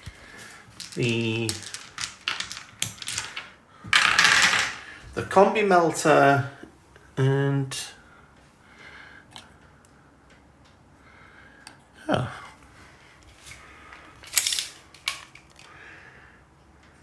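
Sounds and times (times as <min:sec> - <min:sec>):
dice clattering: 0:00.0 - 0:04.9, 0:14.2 - 0:15.7
dice thump on tabletop: 0:00.8 - 0:04.8.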